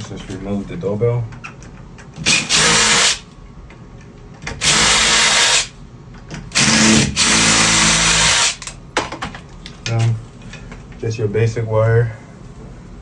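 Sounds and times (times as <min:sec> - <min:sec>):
cordless drill running: 0:02.2 - 0:03.2, 0:04.6 - 0:05.7, 0:06.5 - 0:08.6.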